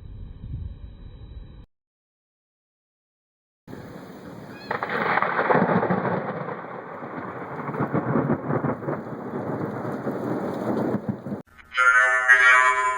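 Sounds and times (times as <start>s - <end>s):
rain falling: 3.7s - 11.4s
thunder rolling: 3.7s - 11.4s.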